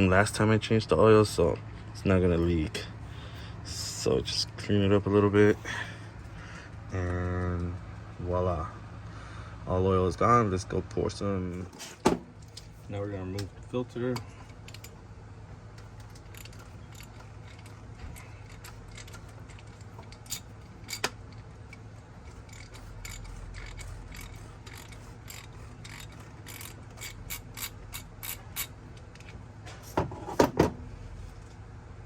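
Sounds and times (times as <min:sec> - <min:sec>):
socket ratchet clicking: 0:16.0 - 0:29.3.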